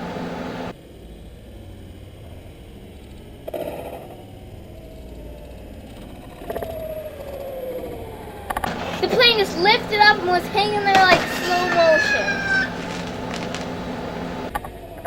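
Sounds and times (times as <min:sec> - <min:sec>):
electric ducted-fan whine: 0:00.0 - 0:03.4, 0:04.1 - 0:14.5
brief crackles: 0:10.9 - 0:14.5.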